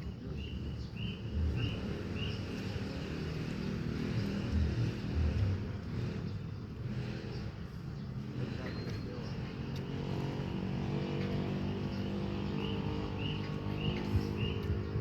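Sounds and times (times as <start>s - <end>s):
low engine rumble: 8.4s - 15.0s.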